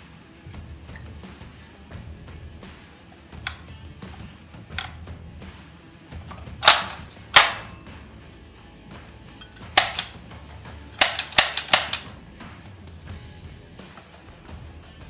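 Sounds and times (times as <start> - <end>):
air rifle shots: 2.6 - 8.0, 9.5 - 10.2, 11.0 - 12.2.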